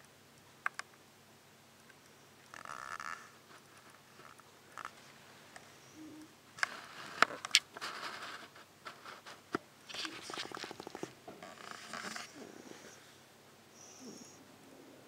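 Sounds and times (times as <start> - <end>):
puppy snoring: 9.9 - 13.2, 13.8 - 15.0.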